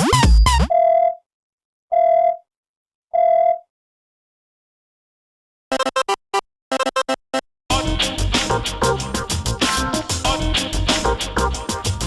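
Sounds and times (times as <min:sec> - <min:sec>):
phone ringtone music with drums: 0:00.0 - 0:00.7, 0:05.7 - 0:12.0.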